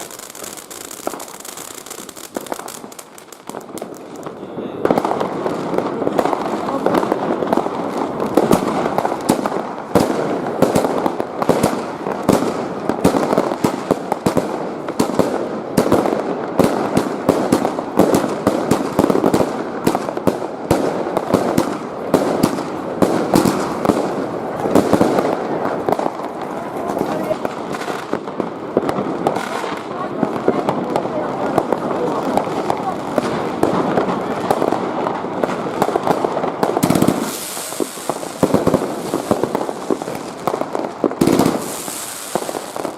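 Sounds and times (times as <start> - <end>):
fireworks and firecrackers exploding: 0.0 - 42.9.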